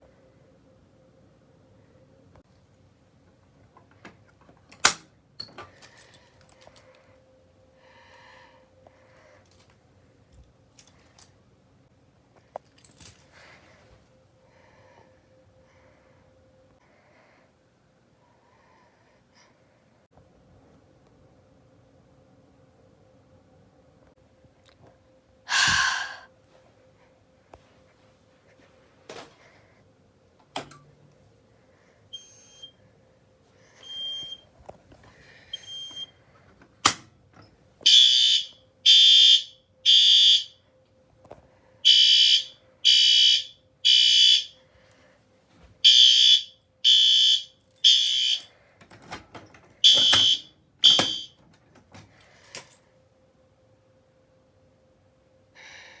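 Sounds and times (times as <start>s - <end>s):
fire alarm beeps: 32.1s - 32.8s, 33.8s - 34.5s, 35.5s - 36.2s, 37.8s - 40.6s, 41.8s - 44.6s, 45.8s - 48.5s, 49.8s - 51.5s.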